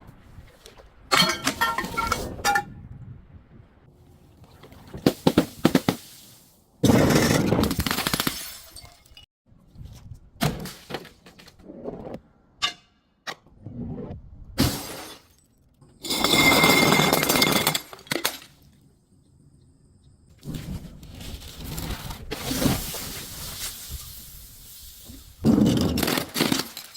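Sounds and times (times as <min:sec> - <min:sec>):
glass bottle breaking and crunching: 0:06.9 - 0:09.3, 0:14.6 - 0:18.5, 0:25.5 - 0:26.9.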